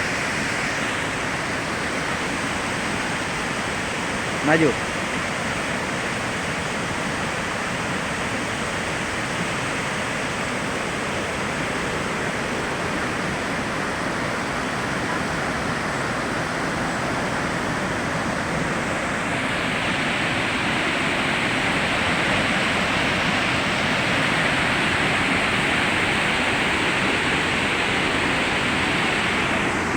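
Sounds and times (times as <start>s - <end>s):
waterfall rushing: 0.0s - 29.9s.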